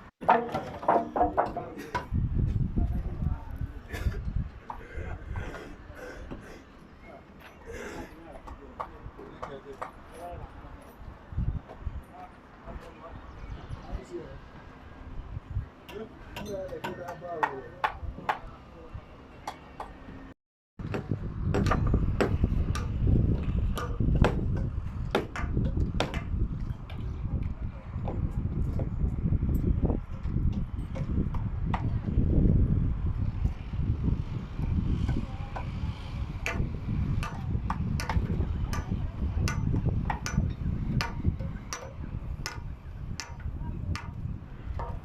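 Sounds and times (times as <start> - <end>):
hammering on timber: 0.2 - 2.1, 15.9 - 18.5, 20.8 - 26.3, 36.4 - 45.0.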